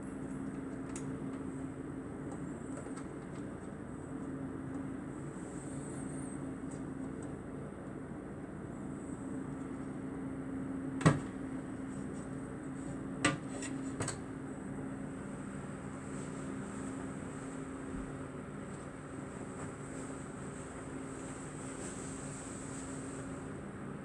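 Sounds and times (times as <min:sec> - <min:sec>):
steady low hum: 0:00.0 - 0:24.0.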